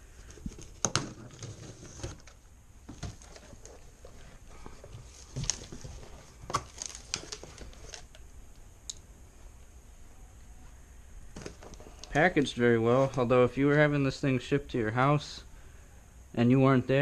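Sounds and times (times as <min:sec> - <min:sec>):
cardboard box being opened: 0:00.4 - 0:08.1.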